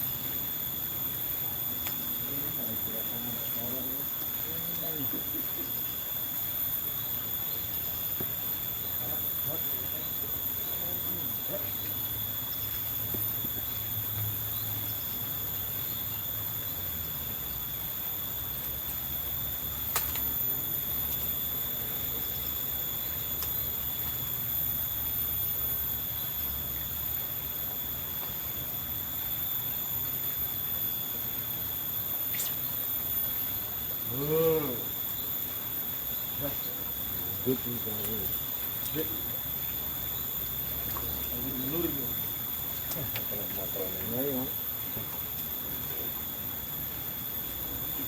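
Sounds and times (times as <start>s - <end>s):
insects droning: 0.0s - 48.0s.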